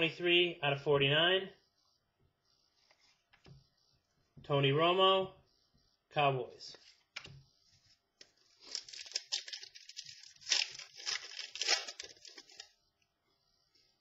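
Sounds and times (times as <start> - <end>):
trading card packaging rustling: 8.2 - 12.8.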